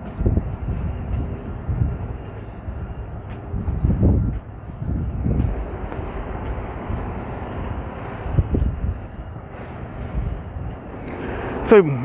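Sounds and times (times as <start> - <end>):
car road and engine rumble: 4.4 - 12.0.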